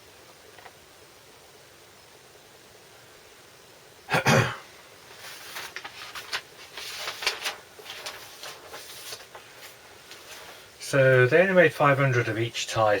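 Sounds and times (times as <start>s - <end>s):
record sleeves rustling and scraping: 5.1s - 11.3s.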